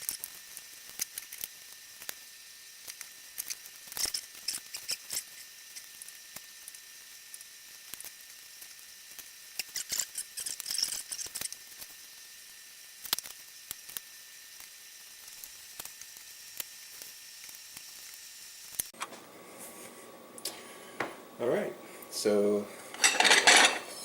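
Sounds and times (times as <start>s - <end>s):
knife scraping board: 22.9s - 24.0s.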